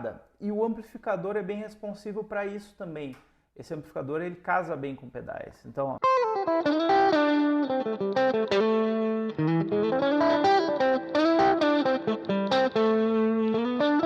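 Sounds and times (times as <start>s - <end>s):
overdriven electric guitar: 6.0s - 14.0s.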